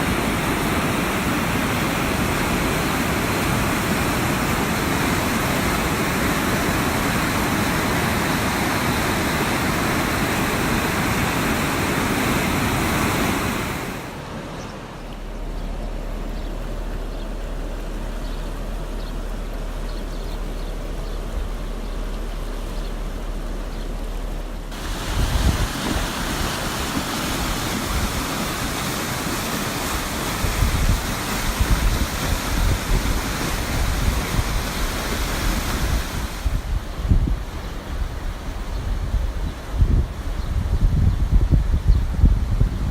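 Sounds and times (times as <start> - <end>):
floodwater rushing: 0.0 - 42.9
low steady hum: 0.0 - 42.9
wind buffeting microphone: 24.7 - 42.9.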